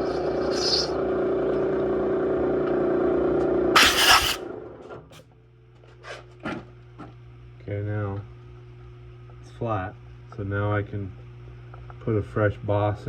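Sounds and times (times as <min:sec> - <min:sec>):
harsh scraping rush: 0:03.8 - 0:04.4
machine spindle running: 0:03.8 - 0:04.4.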